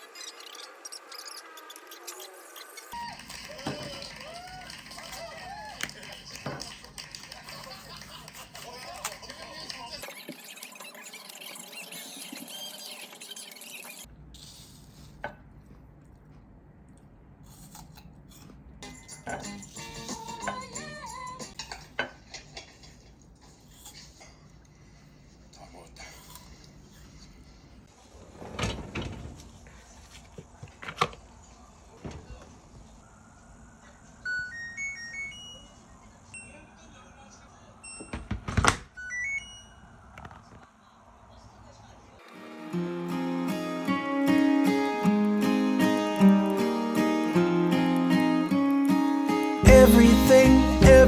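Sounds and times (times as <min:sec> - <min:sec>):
soft eating handling sounds: 0:14.1 - 0:20.7
electronic chime melody: 0:34.3 - 0:35.8.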